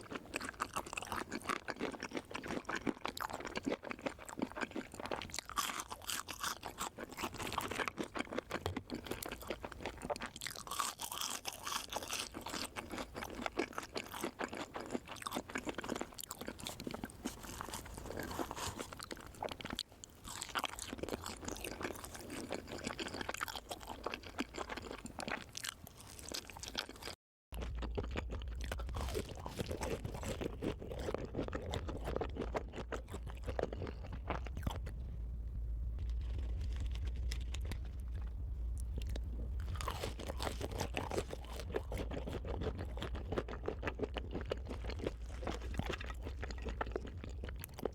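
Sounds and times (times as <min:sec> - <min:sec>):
crunchy chewing and biting: 0:00.0 - 0:47.9
low hum: 0:33.1 - 0:43.0.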